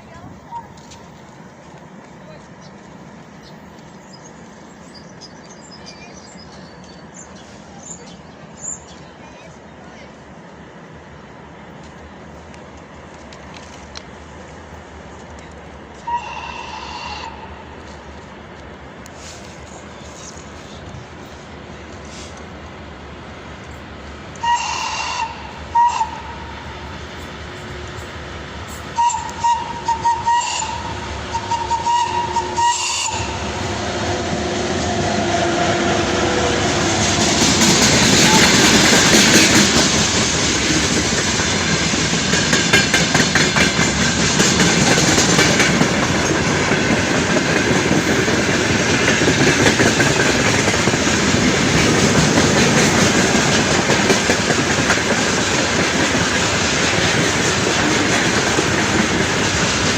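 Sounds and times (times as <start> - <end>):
locomotive whistle blasts: 16.0 - 17.4, 24.4 - 26.6, 28.9 - 33.4
freight wagons rolling clickety-clack: 37.0 - 59.9.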